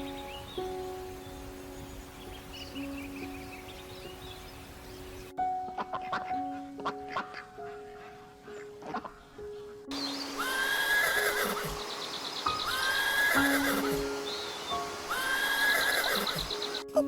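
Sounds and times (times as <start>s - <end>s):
background music with low notes: 0.0s - 17.0s
horse whinnying: 10.4s - 11.8s, 12.6s - 14.1s, 15.1s - 16.6s.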